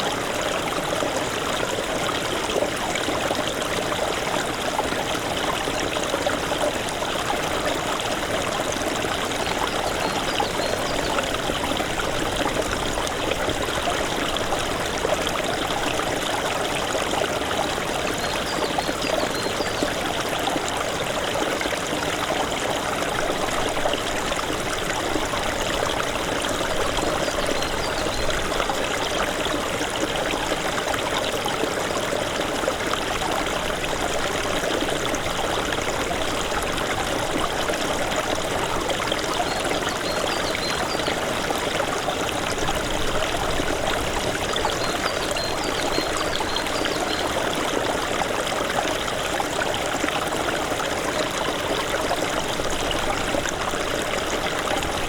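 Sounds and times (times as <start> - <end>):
stream water trickling: 0.0 - 55.0.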